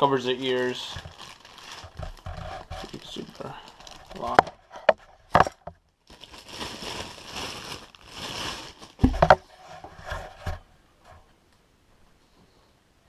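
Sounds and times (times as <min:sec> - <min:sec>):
scraping and rustling: 0:00.5 - 0:05.7, 0:06.4 - 0:11.4.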